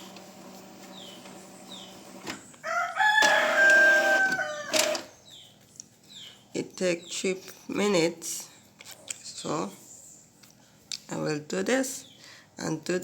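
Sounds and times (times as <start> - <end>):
rooster crowing: 2.6 - 5.1.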